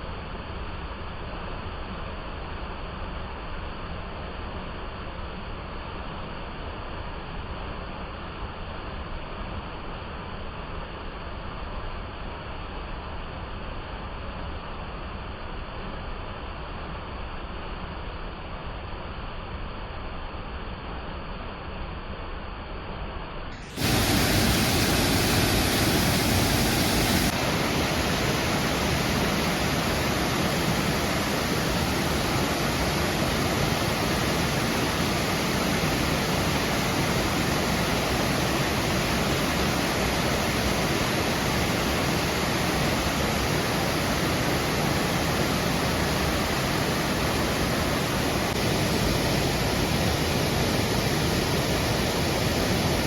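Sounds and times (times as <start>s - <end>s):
waterfall rushing: 23.6s - 53.0s.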